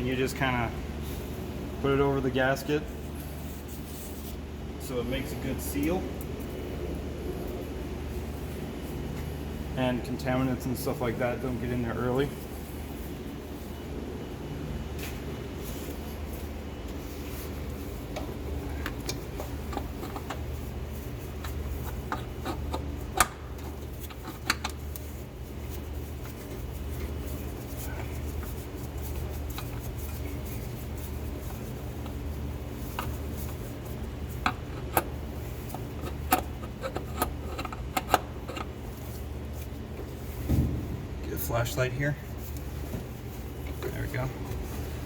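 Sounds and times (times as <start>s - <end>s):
steady low hum: 0.0s - 45.0s
oil filter and tools clicking: 18.1s - 20.5s, 21.4s - 25.2s, 32.8s - 39.2s.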